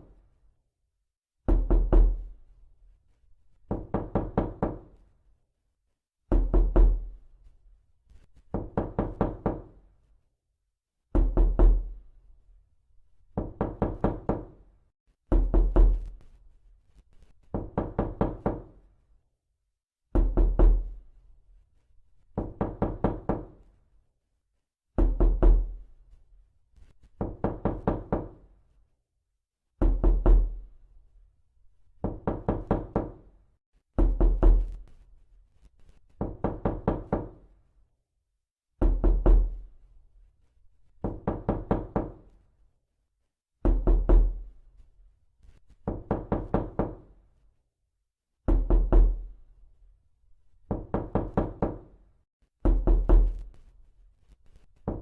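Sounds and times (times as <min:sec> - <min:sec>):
knocking on a door: 0:01.5 - 0:02.4, 0:03.7 - 0:05.0, 0:06.3 - 0:07.2, 0:08.4 - 0:09.8, 0:11.1 - 0:11.9, 0:13.3 - 0:14.6, 0:15.3 - 0:16.2, 0:17.5 - 0:18.8, 0:20.1 - 0:21.0, 0:22.4 - 0:23.6, 0:25.0 - 0:25.8, 0:27.1 - 0:28.4, 0:29.8 - 0:30.6, 0:32.0 - 0:33.3, 0:34.0 - 0:34.9, 0:36.2 - 0:37.5, 0:38.8 - 0:39.6, 0:41.0 - 0:42.4, 0:43.6 - 0:44.4, 0:45.8 - 0:47.1, 0:48.5 - 0:49.3, 0:50.7 - 0:51.9, 0:52.6 - 0:53.5.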